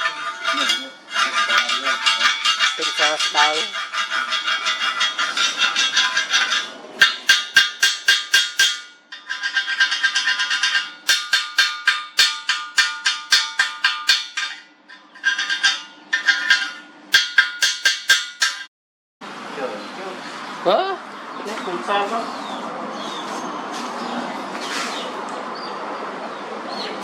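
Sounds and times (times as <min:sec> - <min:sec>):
music with percussive beat: 0:17.1 - 0:18.7.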